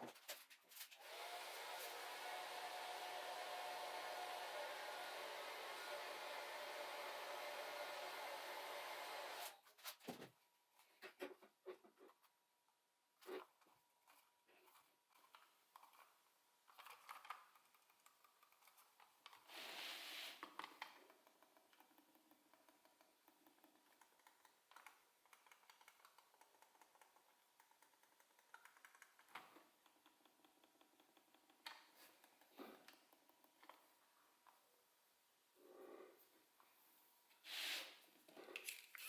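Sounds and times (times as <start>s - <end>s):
small plastic parts clicking: 15.2s - 19.5s, 20.4s - 34.6s.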